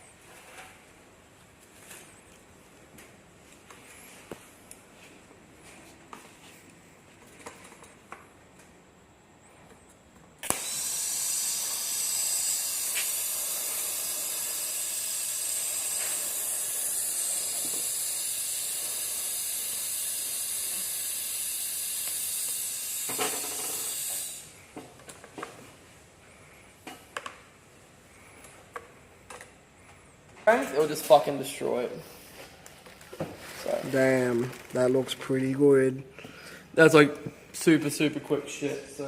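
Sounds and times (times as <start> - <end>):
welding arc hissing: 10.4 - 24.6.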